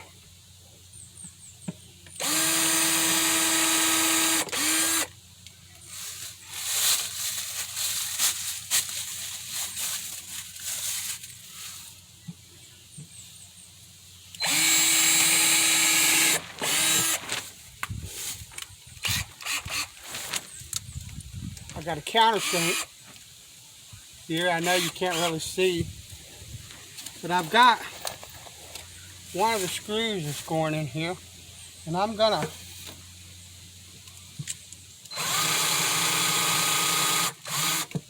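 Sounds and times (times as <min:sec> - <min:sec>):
drill driving screws into wood: 0:02.2 - 0:05.1, 0:14.4 - 0:17.3, 0:19.0 - 0:20.2, 0:22.3 - 0:22.9, 0:24.6 - 0:25.4, 0:35.1 - 0:38.0
handling knocks and clatter: 0:27.0 - 0:28.9.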